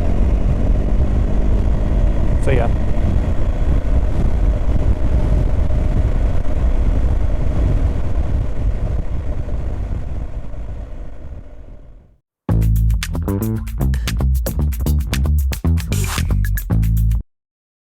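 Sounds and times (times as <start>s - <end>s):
motorcycle engine running: 0.0s - 7.4s
road noise: 0.0s - 7.6s.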